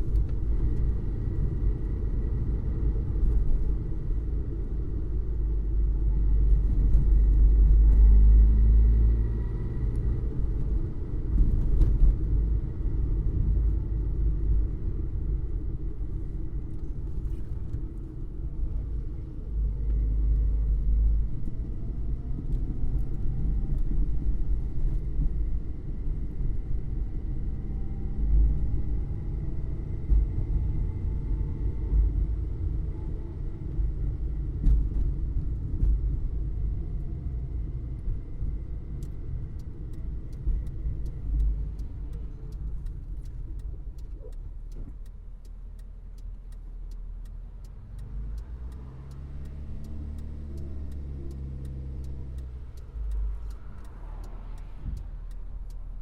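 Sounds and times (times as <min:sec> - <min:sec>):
car engine and road rumble: 0:00.0 - 0:56.0
steady ticking: 0:39.0 - 0:56.0.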